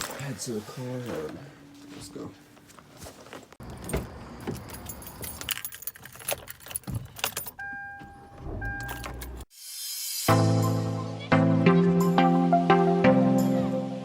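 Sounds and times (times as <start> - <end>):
keys jangling: 3.6 - 7.6, 8.8 - 9.5
music: 9.6 - 14.0.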